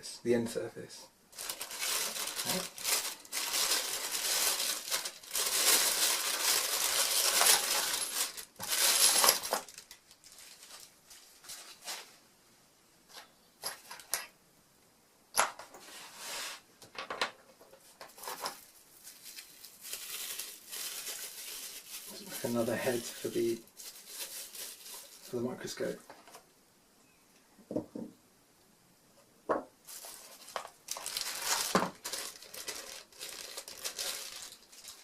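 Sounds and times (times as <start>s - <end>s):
plastic packaging crinkling: 1.3s - 12.2s, 18.1s - 26.0s, 29.9s - 35.0s.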